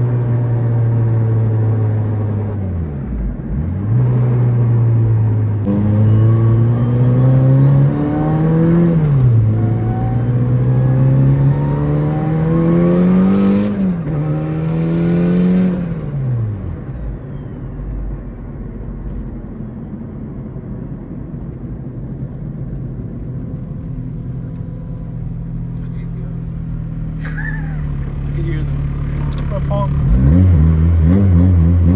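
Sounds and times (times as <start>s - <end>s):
car engine accelerating: 0.0s - 31.9s
high turbo whine: 5.6s - 19.9s, 22.7s - 31.9s.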